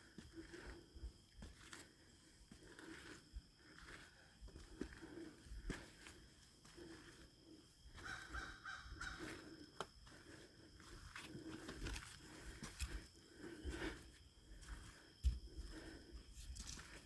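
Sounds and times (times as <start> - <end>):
footsteps crunching on trail: 0.0 - 17.0
distant crow caws: 7.9 - 9.6.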